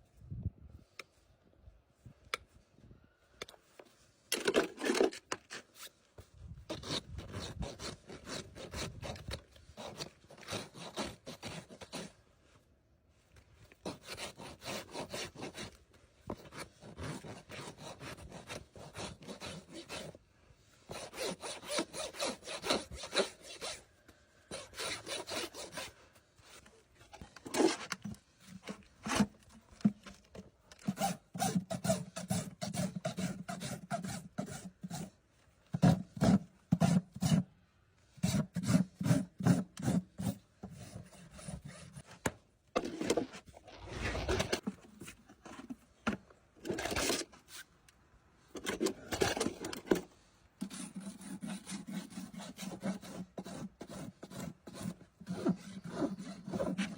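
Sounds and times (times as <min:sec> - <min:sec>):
rasp filing a hoof: 0:06.7 - 0:12.2, 0:13.8 - 0:20.2, 0:20.8 - 0:29.3, 0:30.8 - 0:42.2, 0:48.6 - 0:56.9.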